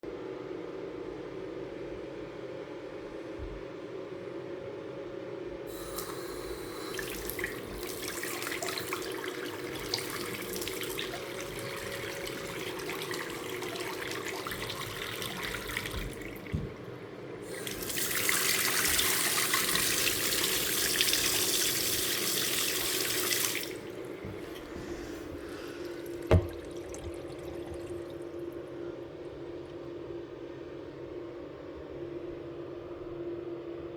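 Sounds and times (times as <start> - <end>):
faucet running into sink: 5.7 - 16.8, 17.5 - 28.6.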